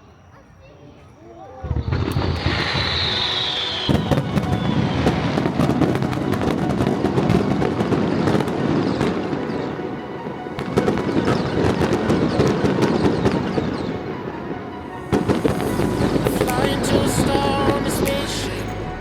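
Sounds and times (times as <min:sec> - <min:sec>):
firework bursts and crackling: 0:01.6 - 0:14.0, 0:14.9 - 0:18.5
falling firework whistle: 0:01.7 - 0:09.8.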